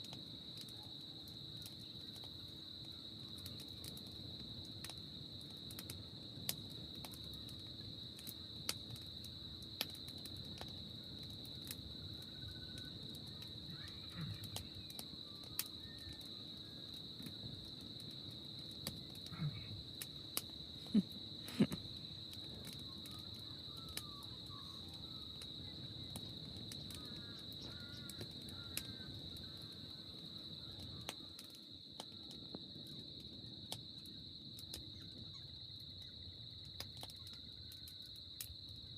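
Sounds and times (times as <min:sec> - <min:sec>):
campfire crackling: 0:00.0 - 0:38.9
insect chorus: 0:00.0 - 0:38.9
faint bird chirps: 0:13.7 - 0:16.8, 0:22.8 - 0:26.2.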